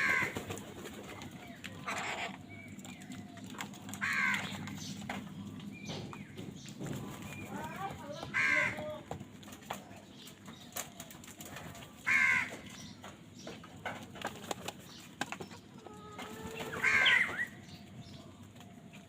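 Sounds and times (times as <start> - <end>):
crows cawing: 0.0 - 0.4, 4.0 - 4.7, 8.2 - 9.0, 12.0 - 12.7, 16.6 - 17.6.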